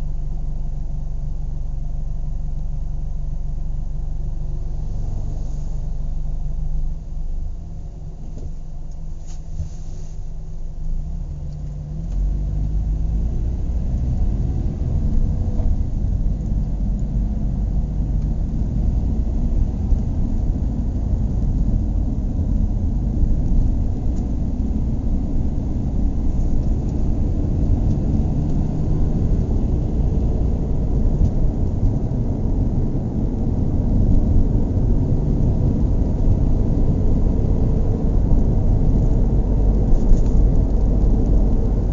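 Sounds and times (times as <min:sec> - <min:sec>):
car engine revving: 0:10.9 - 0:41.9.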